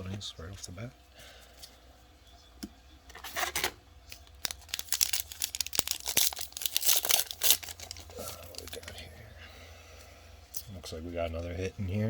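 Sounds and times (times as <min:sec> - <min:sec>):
foil wrapper tearing and crinkling: 0:04.1 - 0:08.9.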